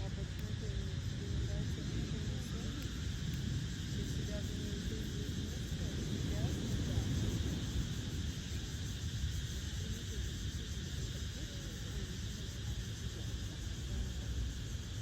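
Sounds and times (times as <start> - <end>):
distant voices: 0.0 - 15.0
wind rumbling on microphone: 0.0 - 15.0.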